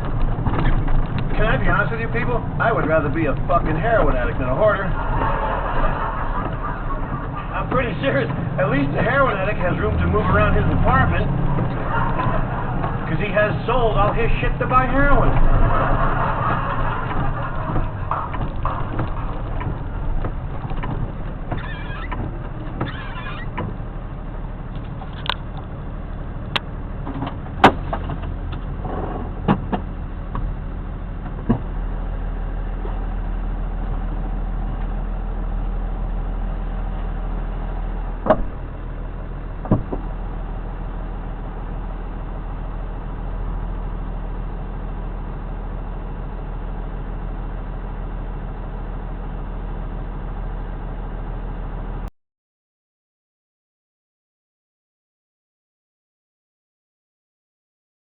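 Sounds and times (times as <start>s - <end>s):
sharp clicks and knocks: 0.0s - 1.4s, 17.0s - 23.8s, 39.6s - 40.1s
low vehicle engine hum: 0.0s - 52.1s.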